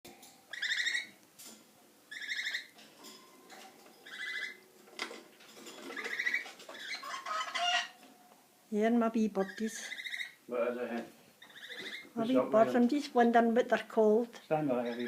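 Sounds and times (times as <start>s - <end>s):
parrots chirping: 0.5s - 8.3s, 9.4s - 10.5s, 11.3s - 12.8s, 14.8s - 15.0s.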